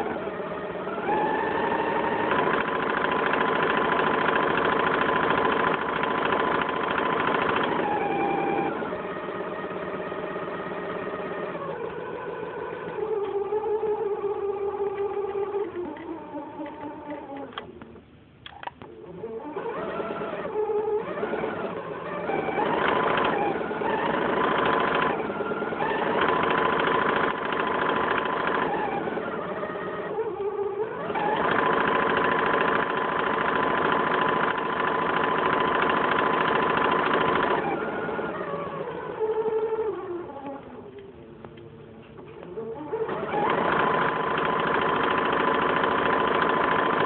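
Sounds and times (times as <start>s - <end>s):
sewing machine running: 0.0s - 17.6s, 19.0s - 40.8s, 42.4s - 47.0s.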